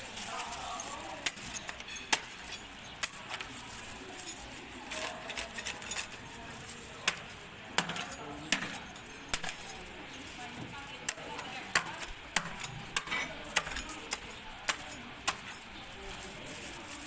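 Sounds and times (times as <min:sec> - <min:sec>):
hard objects clicking and clinking: 0:00.0 - 0:17.0.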